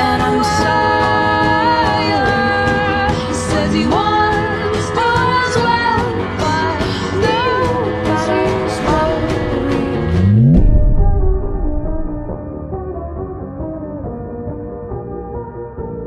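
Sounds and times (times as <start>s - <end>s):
pop music backing with steady beat: 0.0s - 11.6s.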